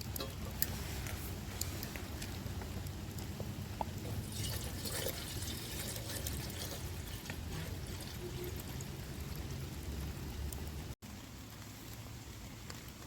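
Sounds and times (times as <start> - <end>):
rain pattering: 0.0 - 13.0
liquid being poured: 3.8 - 10.3.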